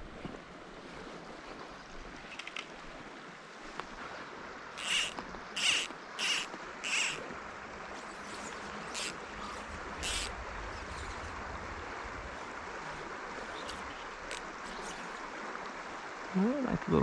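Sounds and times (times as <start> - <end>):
stream rushing water: 0.0 - 17.0
wind rumble on microphone: 9.2 - 15.1.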